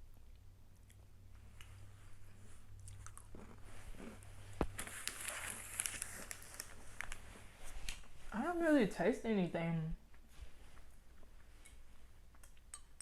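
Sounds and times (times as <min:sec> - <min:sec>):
crunching and chewing snack: 0:00.2 - 0:07.2
faint crackles: 0:01.4 - 0:08.4.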